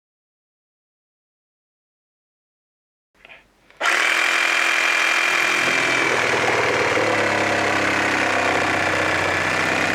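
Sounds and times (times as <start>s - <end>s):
reciprocating saw motor whining: 3.8s - 9.9s.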